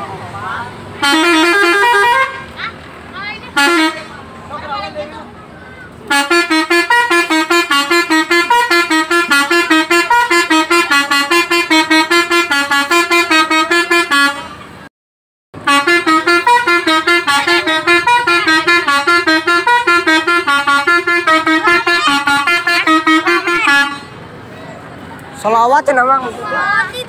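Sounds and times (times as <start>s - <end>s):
bus horn playing fast melody: 1.0s - 2.6s, 3.4s - 4.2s, 6.1s - 14.8s, 15.6s - 24.3s.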